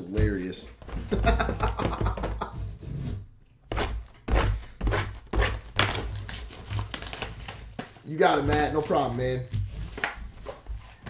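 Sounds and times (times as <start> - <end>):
cardboard boxes knocking on table: 0.2 - 2.7, 8.4 - 10.8.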